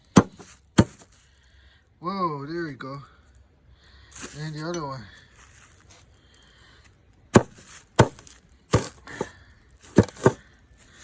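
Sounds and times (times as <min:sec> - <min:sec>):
hard blows crushing a beetle: 0:00.0 - 0:01.1, 0:07.3 - 0:10.5.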